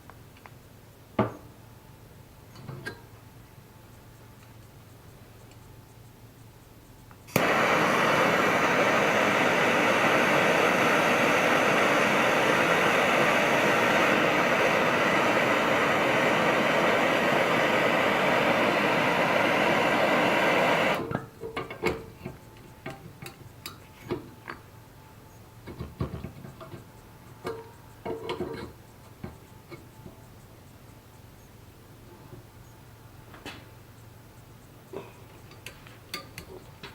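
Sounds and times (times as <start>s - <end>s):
electric power tool running: 7.3s - 21.1s.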